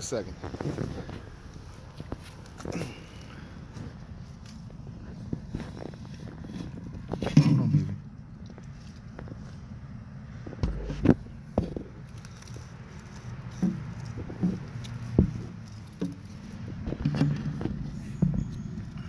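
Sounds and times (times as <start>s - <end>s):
handling knocks and clicks: 10.5s - 19.0s.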